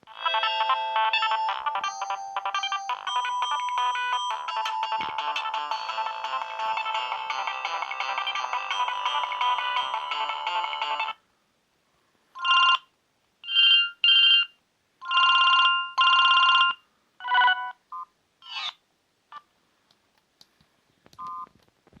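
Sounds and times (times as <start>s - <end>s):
polyphonic ringtone melody: 0.1s - 11.2s.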